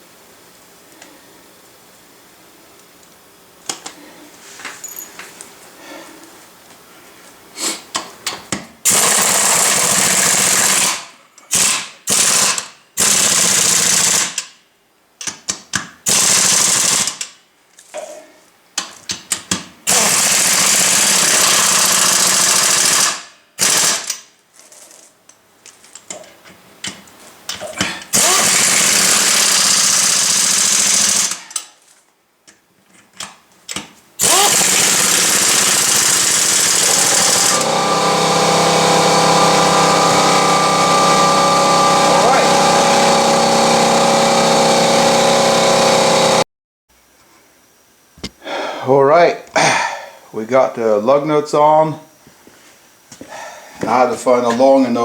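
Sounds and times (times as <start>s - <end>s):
impact wrench running: 8.9s - 14.5s, 16.1s - 17.2s, 19.9s - 24.2s, 28.1s - 31.6s, 34.2s - 46.4s.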